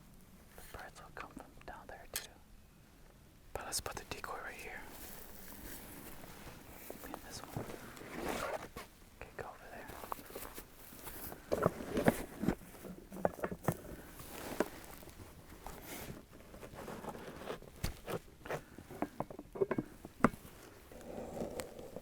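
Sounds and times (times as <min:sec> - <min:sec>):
footsteps in dry grass: 0:04.7 - 0:09.0, 0:09.8 - 0:17.7.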